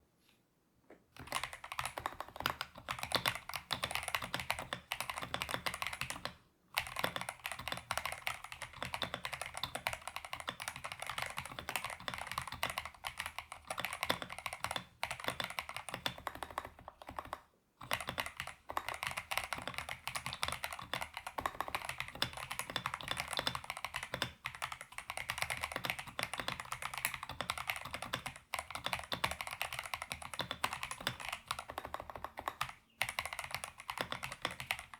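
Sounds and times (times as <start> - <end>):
mechanical keyboard typing: 1.2 - 34.9.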